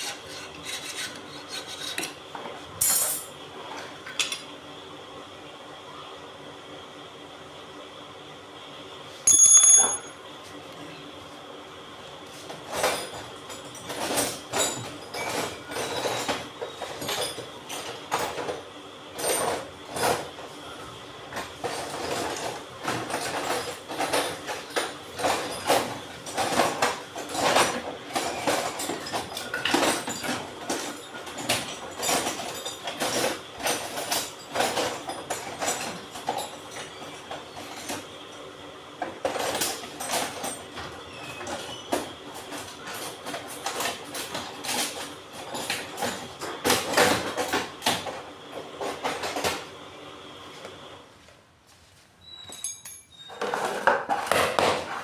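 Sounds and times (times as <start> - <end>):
metallic clink: 9.3 - 10.2, 52.6 - 53.3.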